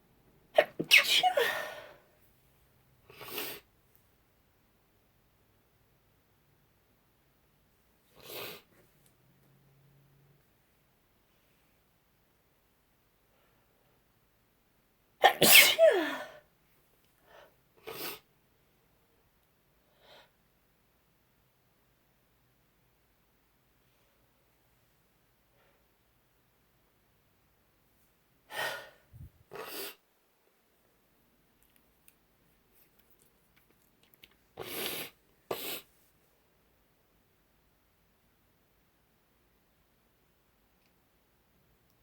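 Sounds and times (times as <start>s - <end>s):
woman sneezing: 0.6s - 1.9s, 15.2s - 16.4s
short sniffs: 29.5s - 30.0s, 34.6s - 36.0s.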